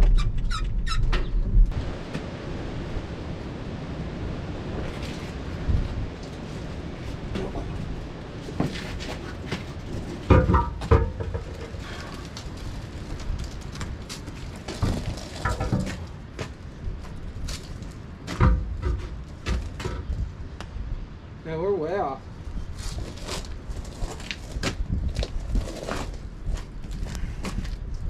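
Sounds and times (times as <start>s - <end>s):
wind rumble on microphone: 0.0s - 28.0s
metal clanks and knocks: 8.5s - 12.3s, 14.6s - 16.6s, 18.2s - 20.2s.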